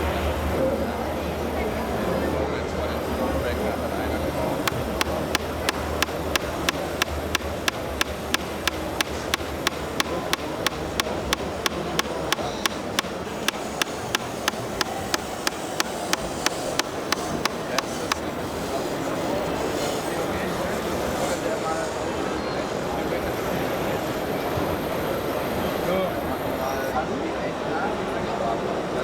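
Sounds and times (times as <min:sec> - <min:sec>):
steady background noise: 0:00.0 - 0:29.0
mechanical clicking: 0:04.6 - 0:18.3.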